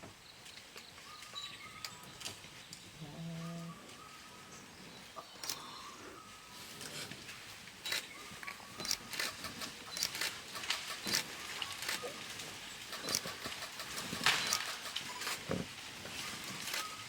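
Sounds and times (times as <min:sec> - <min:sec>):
sharp clicks: 0:07.9 - 0:12.1, 0:12.8 - 0:15.4.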